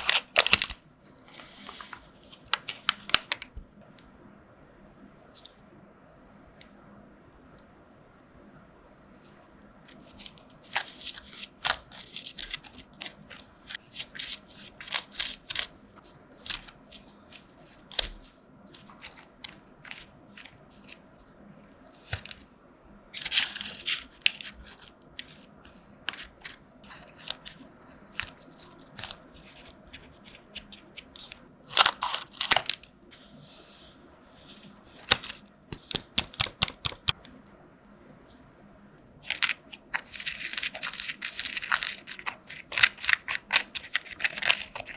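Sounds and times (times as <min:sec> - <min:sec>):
crinkling or tearing: 0:00.0 - 0:00.8, 0:26.1 - 0:32.9, 0:39.2 - 0:44.9.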